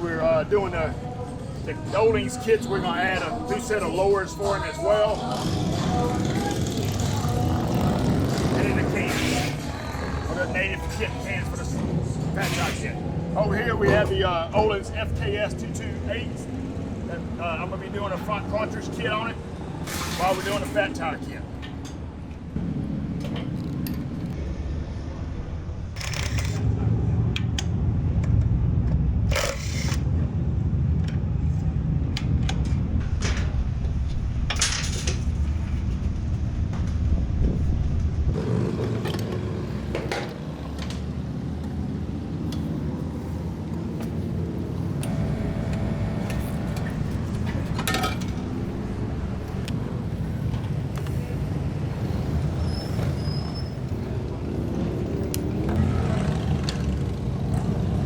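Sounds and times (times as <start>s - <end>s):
low workshop rumble: 0.0s - 58.0s
metal tools clanking: 45.0s - 49.7s.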